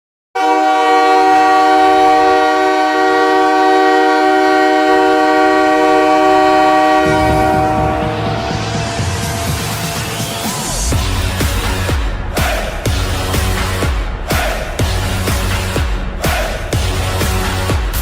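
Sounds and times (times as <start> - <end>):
goal horn chord: 0.4 - 10.0, 10.9 - 18.0
music with low beat: 7.0 - 18.0.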